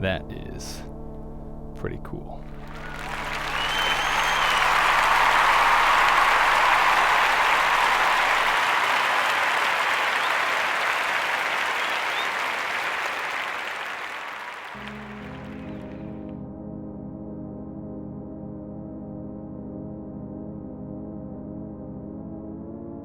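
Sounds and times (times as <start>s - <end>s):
background music: 0.0s - 9.3s, 14.7s - 23.0s
applause: 2.5s - 16.2s.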